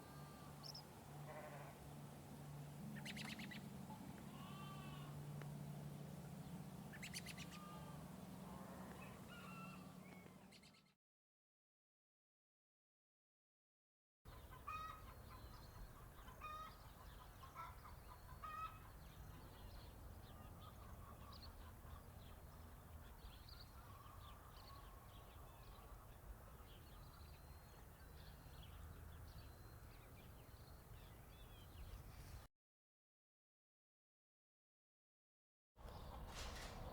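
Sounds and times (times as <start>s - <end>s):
chickens clucking and squawking: 14.3s - 25.1s.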